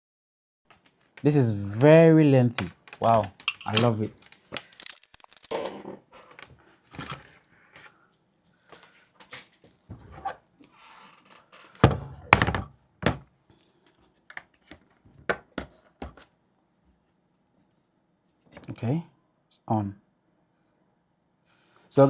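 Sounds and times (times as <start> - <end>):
equipment being handled: 2.6 - 8.0.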